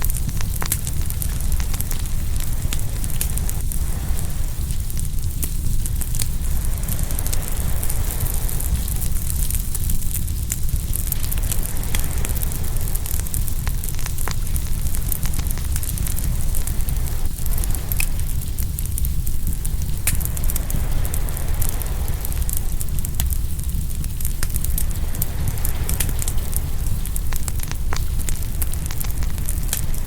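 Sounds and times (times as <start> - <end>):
wood fire crackling and popping: 0.0 - 30.0
surf washing in: 6.3 - 9.6, 11.0 - 14.2, 19.8 - 30.0.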